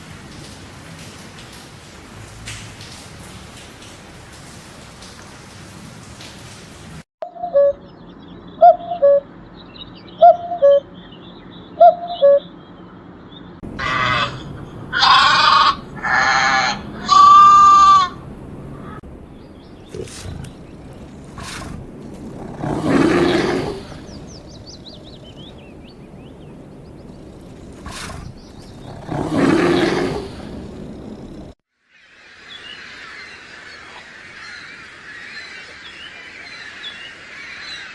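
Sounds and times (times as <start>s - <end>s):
rough animal roars: 13.6s - 31.6s
loud rich animal cries: 13.7s - 19.0s, 19.8s - 31.5s
short animal calls: 13.7s - 31.5s.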